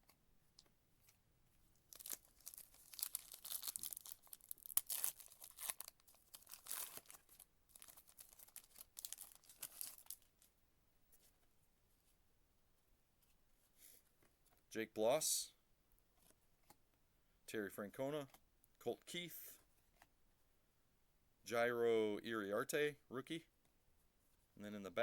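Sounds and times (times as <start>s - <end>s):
foil wrapper tearing and crinkling: 1.9s - 10.3s.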